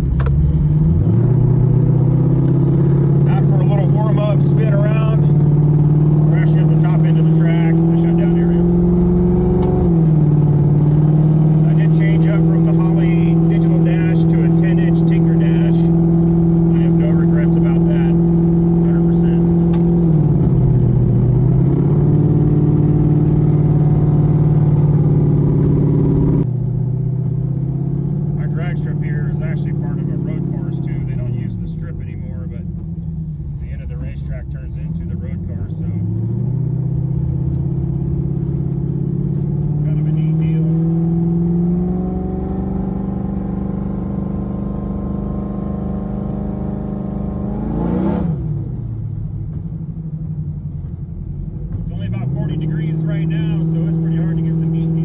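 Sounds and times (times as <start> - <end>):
drag car engine running: 0.0 - 26.5, 27.9 - 55.0.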